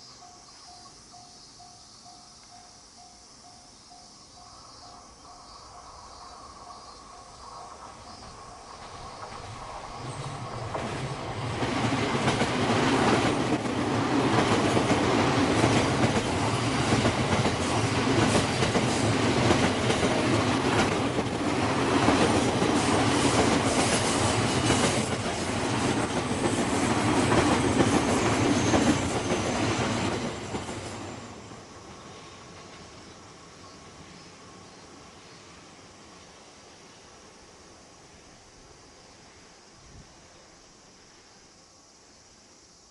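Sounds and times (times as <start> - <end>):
train wheels clacking over rail joints: 10.6 - 31.0.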